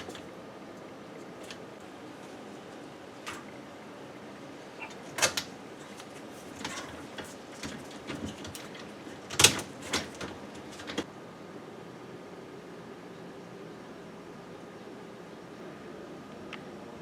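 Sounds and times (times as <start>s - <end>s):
dishwasher rack clattering: 0.0s - 0.3s, 3.2s - 3.6s, 4.8s - 11.0s.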